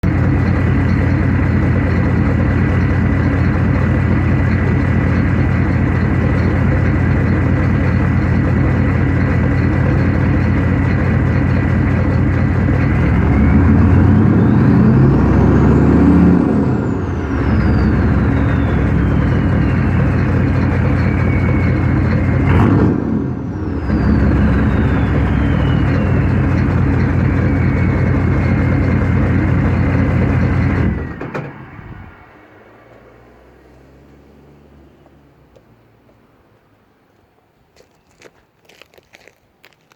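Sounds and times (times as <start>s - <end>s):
diesel engine idling and revving: 0.0s - 37.2s
turbo whistle: 16.3s - 31.2s.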